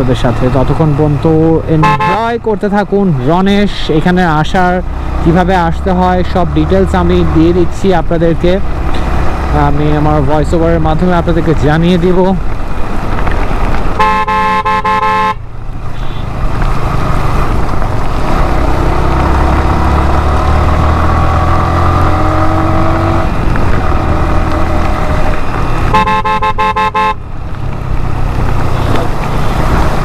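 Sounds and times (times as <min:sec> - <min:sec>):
road rumble: 0:00.0 - 0:30.0
vehicle horn blast: 0:01.8 - 0:02.3, 0:14.0 - 0:15.4, 0:25.9 - 0:27.2.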